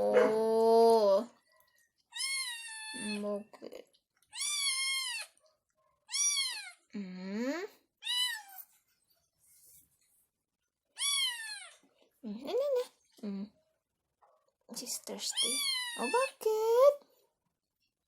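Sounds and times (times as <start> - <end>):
cat meowing: 2.1 - 3.2, 4.3 - 5.4, 6.1 - 6.9, 8.0 - 8.6, 11.0 - 11.8, 15.3 - 16.3.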